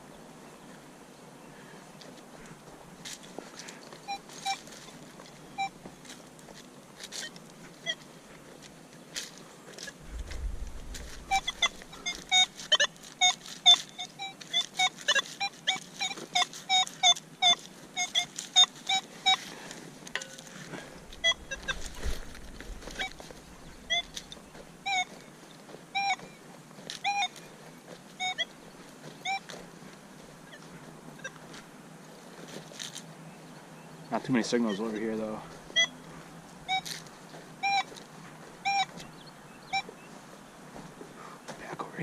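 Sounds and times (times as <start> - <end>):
geese honking: 10.2 - 19.7, 20.5 - 25.2, 34.2 - 40.0.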